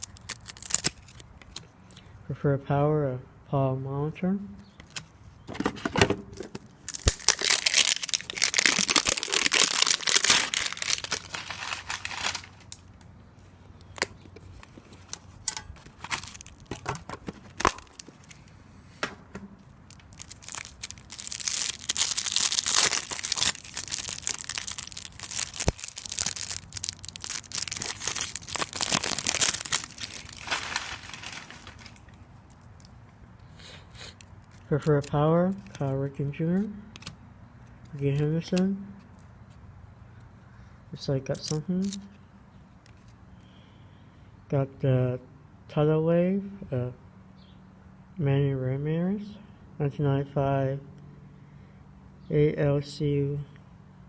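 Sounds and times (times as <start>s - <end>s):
wrapper tearing and crinkling: 0.0s - 1.2s, 6.8s - 13.0s, 14.0s - 18.4s, 19.6s - 32.9s, 41.3s - 42.1s.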